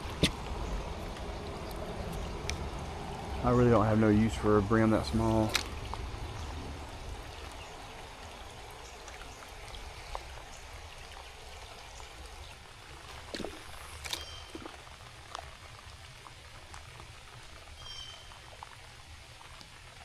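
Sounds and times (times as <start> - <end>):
short sharp knocks or splashes: 0.0 - 0.6, 5.4 - 6.0
rain pattering: 0.0 - 20.0.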